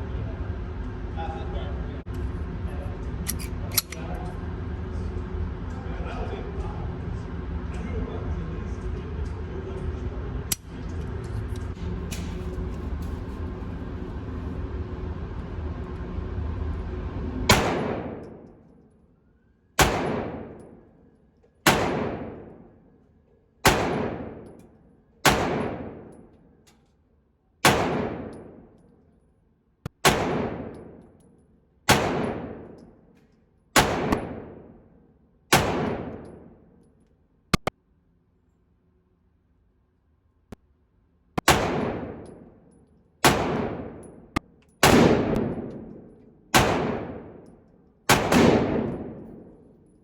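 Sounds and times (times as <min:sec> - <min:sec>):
steady background noise: 0:00.0 - 0:26.9
pistol shots with ringing decay: 0:17.5 - 0:18.4, 0:19.8 - 0:20.8, 0:21.6 - 0:22.7, 0:23.6 - 0:24.6, 0:25.2 - 0:26.2, 0:27.6 - 0:28.7, 0:30.0 - 0:31.0, 0:31.9 - 0:32.8, 0:33.8 - 0:34.8, 0:35.5 - 0:36.6, 0:41.4 - 0:42.5, 0:43.2 - 0:47.5, 0:48.1 - 0:49.7.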